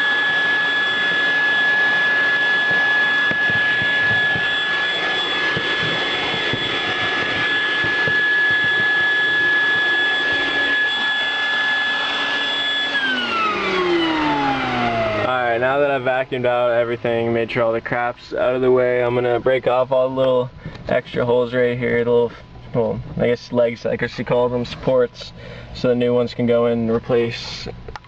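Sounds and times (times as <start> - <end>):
vacuum motor winding down: 0.0 - 19.4
vacuum cleaner running: 0.0 - 26.8.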